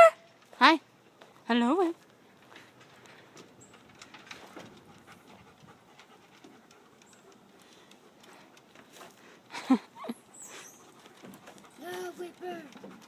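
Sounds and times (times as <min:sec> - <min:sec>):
dog panting: 0:03.6 - 0:13.0.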